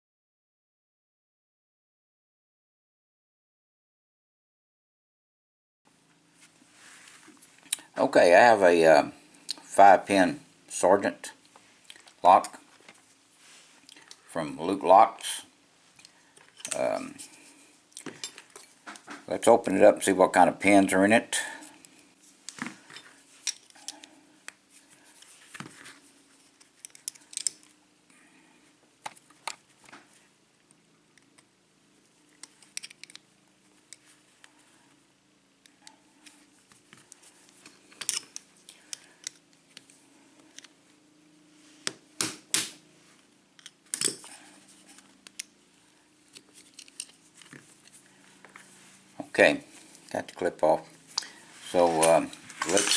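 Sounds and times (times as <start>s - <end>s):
faint steady hum: 5.9s - 52.9s
small metal clicks: 26.8s - 27.7s, 32.4s - 33.2s, 37.1s - 39.9s, 46.3s - 47.5s
metal clicks of hand tools: 32.4s - 33.2s, 37.9s - 39.4s.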